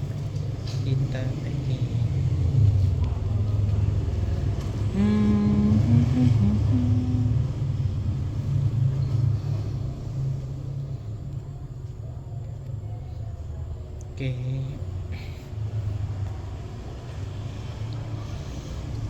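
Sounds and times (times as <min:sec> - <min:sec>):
motor vehicle rumble: 0:00.0 - 0:19.0.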